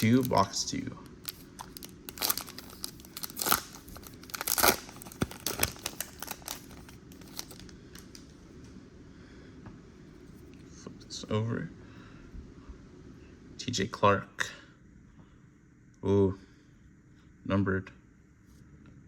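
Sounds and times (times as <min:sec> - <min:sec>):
wrapper crinkling and ripping: 0:00.0 - 0:08.3.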